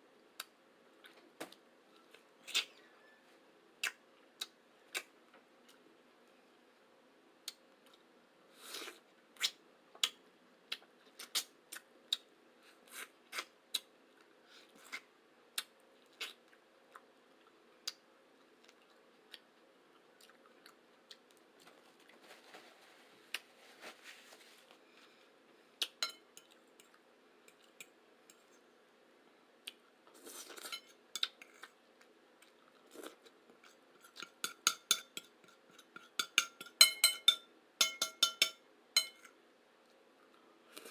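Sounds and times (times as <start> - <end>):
cutlery clinking on plate: 34.2 - 35.3, 36.0 - 39.3.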